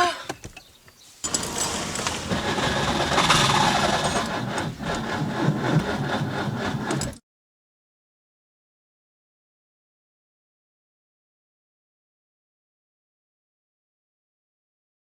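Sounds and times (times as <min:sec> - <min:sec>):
car starter motor cranking: 0:01.2 - 0:07.2.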